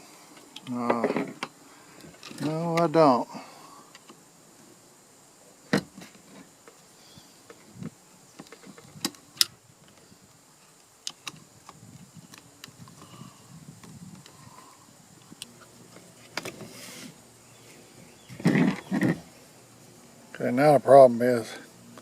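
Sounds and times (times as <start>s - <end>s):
faint rustle: 5.6s - 20.6s.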